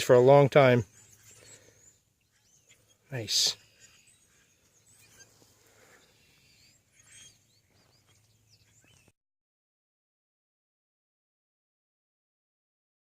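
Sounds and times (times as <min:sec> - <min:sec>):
birds chirping and whistling: 0:00.0 - 0:09.1
quiet outdoor field ambience: 0:00.0 - 0:09.1.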